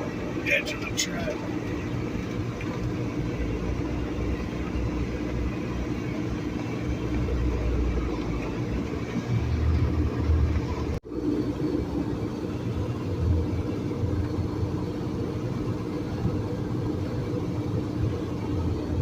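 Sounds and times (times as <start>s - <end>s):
tyres and suspension rumbling: 0.0s - 19.0s
vehicle engine hum: 0.0s - 19.0s.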